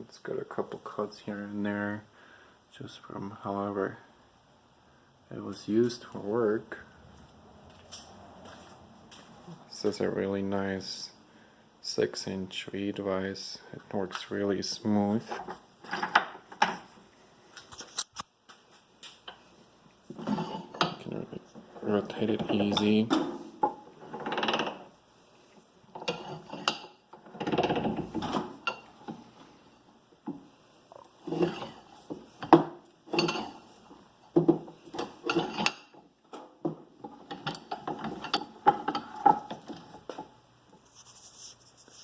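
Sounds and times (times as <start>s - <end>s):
metal grinding of vise: 15.2s - 16.9s, 20.1s - 21.1s, 21.8s - 24.9s, 25.9s - 29.6s, 31.2s - 34.0s, 34.8s - 36.0s, 37.0s - 40.3s.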